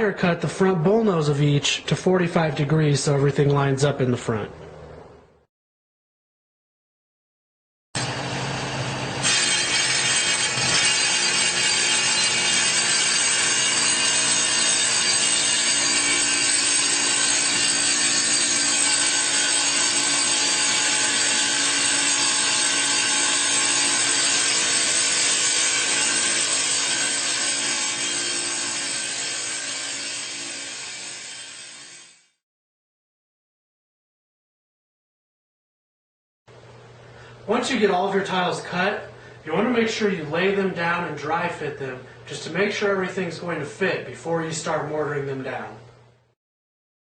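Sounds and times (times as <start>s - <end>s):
power saw cutting stone tile: 8.0s - 32.4s.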